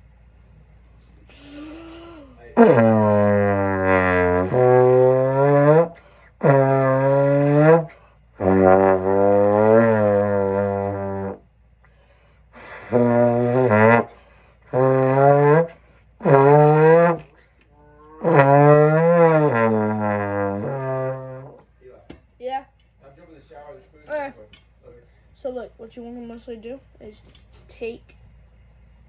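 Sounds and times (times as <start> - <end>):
trombone playing held notes: 2.6 - 11.4, 12.6 - 17.3, 18.0 - 21.6.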